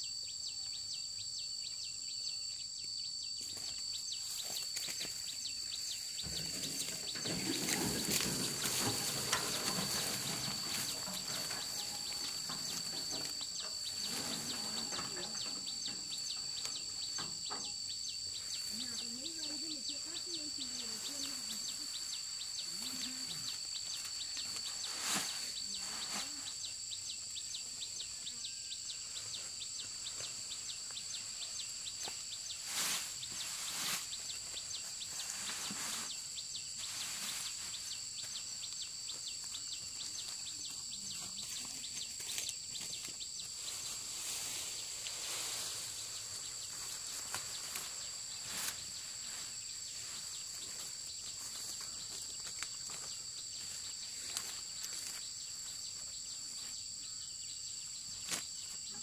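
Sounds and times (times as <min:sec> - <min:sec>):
insects trilling: 0:00.0 - 0:59.0.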